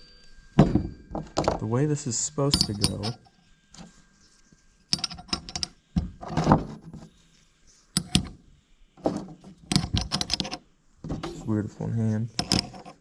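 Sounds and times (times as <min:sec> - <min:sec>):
small metal parts clinking: 0:02.5 - 0:03.3, 0:04.9 - 0:06.6, 0:08.0 - 0:08.4, 0:09.6 - 0:11.7, 0:12.3 - 0:13.0.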